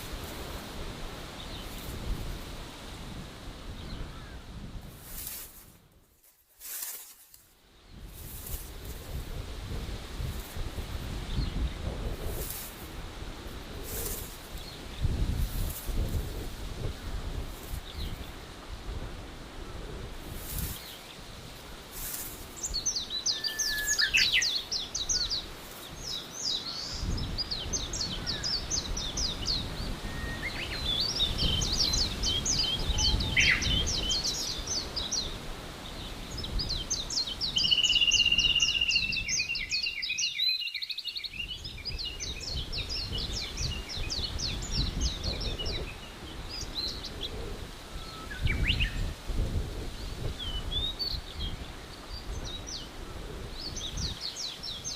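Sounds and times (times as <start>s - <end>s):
birds singing trilled notes: 22.0s - 49.1s, 50.0s - 54.9s.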